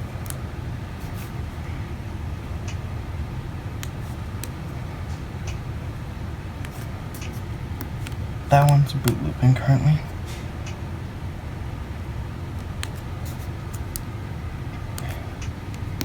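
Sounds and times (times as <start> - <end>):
phones clicking and tapping: 6.6 - 9.7, 14.8 - 16.0.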